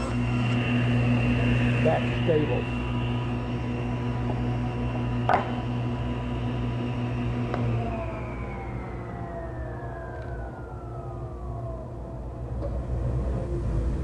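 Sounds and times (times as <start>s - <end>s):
table saw coasting down whine: 0.0s - 14.0s.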